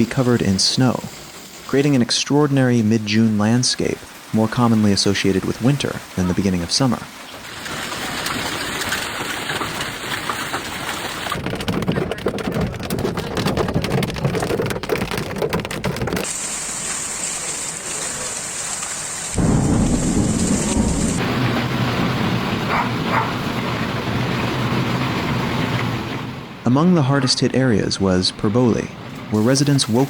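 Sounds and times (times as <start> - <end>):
heavy rain pounding: 0.0 - 30.0
thunder rumble: 19.3 - 26.7.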